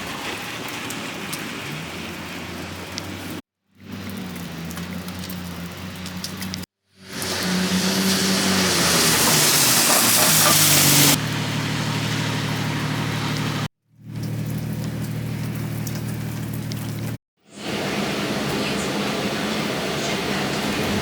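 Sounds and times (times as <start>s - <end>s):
steady rushing hiss: 7.1s - 11.2s.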